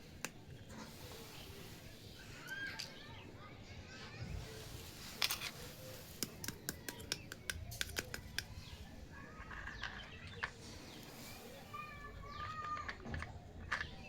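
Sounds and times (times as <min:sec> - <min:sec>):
plastic toy pieces clicking: 0:06.2 - 0:08.6, 0:09.3 - 0:10.6, 0:12.2 - 0:14.0.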